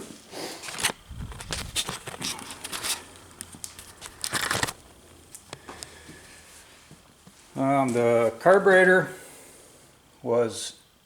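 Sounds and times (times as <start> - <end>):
footsteps: 0.0 - 8.3
camera handling noise: 0.6 - 5.9.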